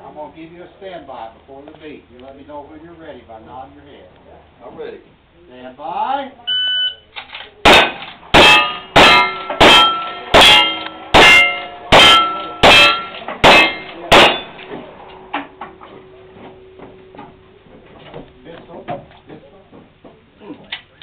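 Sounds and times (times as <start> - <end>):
gunshots: 7.6 - 14.8
steel target clanging: 7.7 - 15.9.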